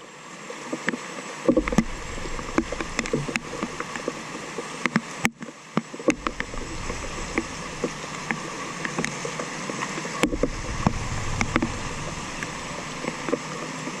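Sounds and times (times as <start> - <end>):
water rushing through a drain: 1.2 - 14.0.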